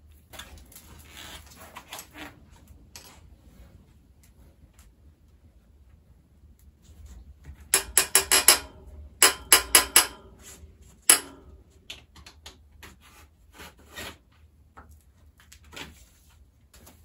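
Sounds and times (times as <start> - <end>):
metallic tool taps on bicycle parts: 7.8 - 10.4, 11.1 - 11.5.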